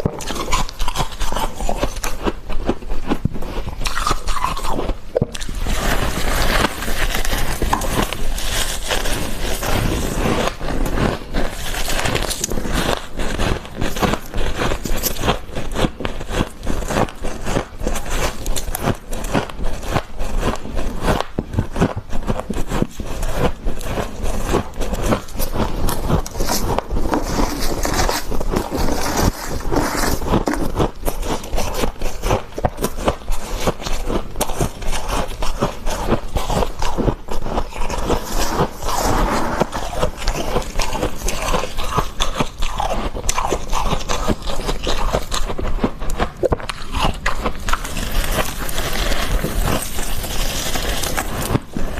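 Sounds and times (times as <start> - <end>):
frost crunching and scraping: 0.0 - 51.9.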